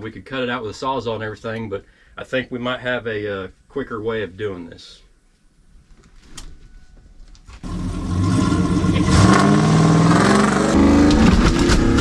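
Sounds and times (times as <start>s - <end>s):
vehicle engine revving: 7.6s - 12.0s.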